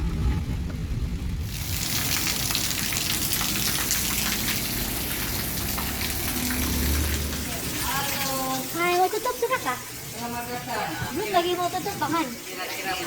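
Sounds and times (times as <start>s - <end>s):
low rumble: 0.0s - 7.9s
heavy rain falling: 0.0s - 13.0s.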